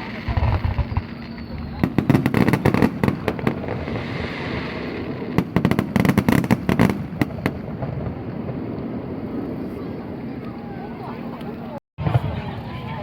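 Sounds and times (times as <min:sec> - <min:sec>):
fireworks bangs: 0:00.0 - 0:10.2, 0:12.0 - 0:13.0.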